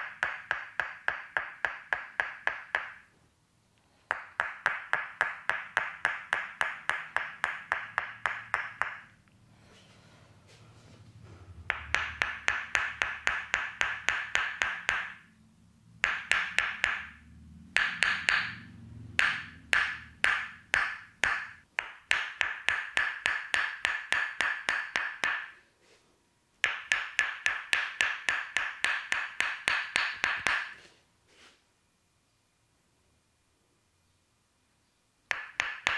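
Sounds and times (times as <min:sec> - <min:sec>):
wooden mallet tapping wooden wedge: 0:00.0 - 0:03.1, 0:04.0 - 0:09.3, 0:11.6 - 0:15.4, 0:16.0 - 0:25.6, 0:26.6 - 0:30.8, 0:35.3 - 0:35.9.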